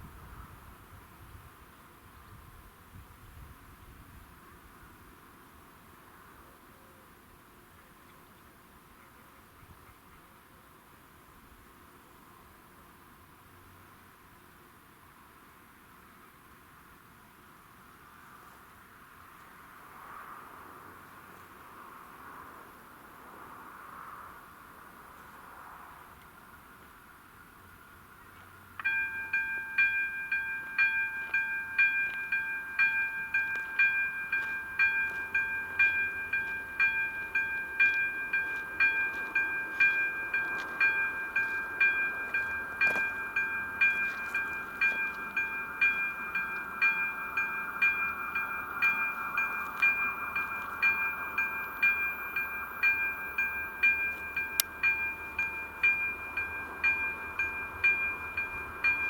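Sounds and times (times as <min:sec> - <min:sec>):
level crossing warning bell: 0:28.8 - 0:59.0.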